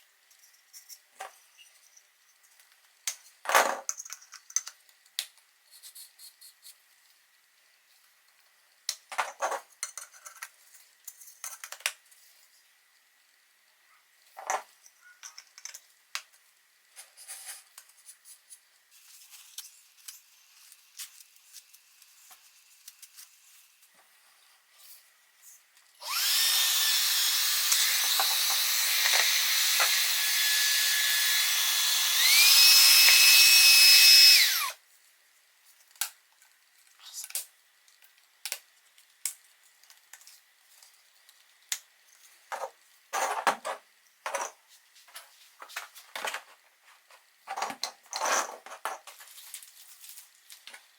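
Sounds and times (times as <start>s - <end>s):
vacuum cleaner motor whining: 26.0s - 34.8s.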